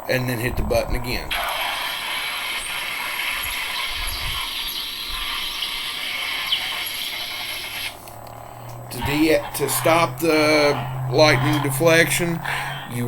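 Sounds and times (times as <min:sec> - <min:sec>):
lightsaber crackling hiss: 0:01.3 - 0:10.0.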